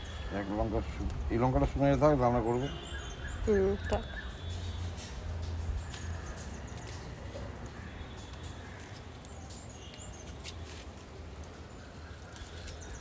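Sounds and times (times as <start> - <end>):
small clicks and rustles: 4.9 - 13.0.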